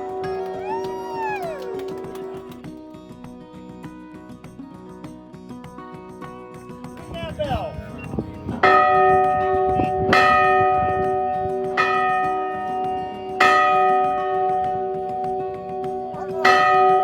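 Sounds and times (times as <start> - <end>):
ship's bell ringing: 16.4 - 17.0.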